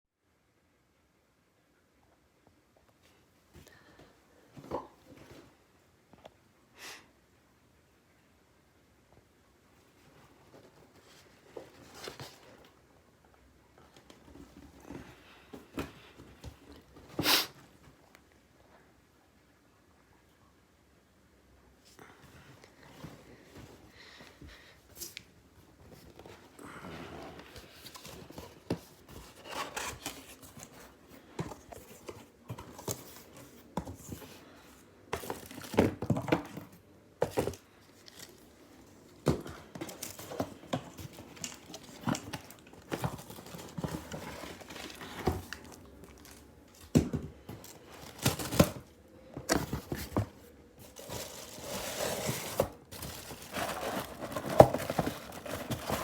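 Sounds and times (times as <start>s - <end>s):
packing material tearing and rustling: 50.8s - 56.0s.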